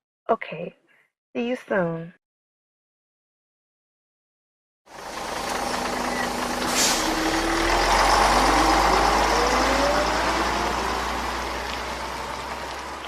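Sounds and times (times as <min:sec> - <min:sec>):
large vehicle engine pulling away: 0:04.9 - 0:13.0
street traffic: 0:04.9 - 0:13.0
brief hiss: 0:06.6 - 0:07.2.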